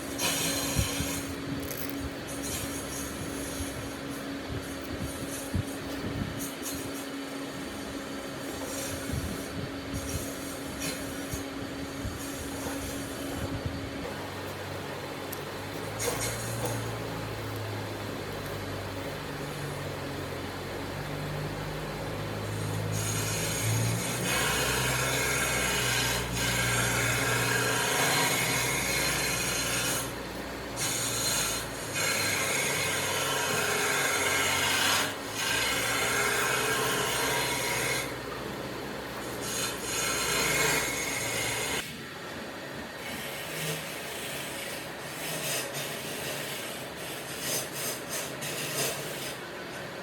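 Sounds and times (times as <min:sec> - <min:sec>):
tool scraping on wood: 0:00.0 - 0:07.4, 0:08.4 - 0:13.5, 0:15.8 - 0:17.0, 0:22.6 - 0:30.2, 0:30.8 - 0:38.4, 0:39.2 - 0:41.9, 0:43.0 - 0:49.9.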